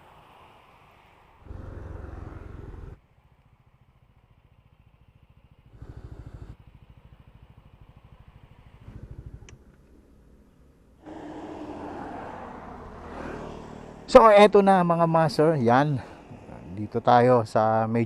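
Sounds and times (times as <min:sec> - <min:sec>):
scooter engine pulsing: 0:01.5 - 0:03.0, 0:04.8 - 0:10.4, 0:11.0 - 0:18.0.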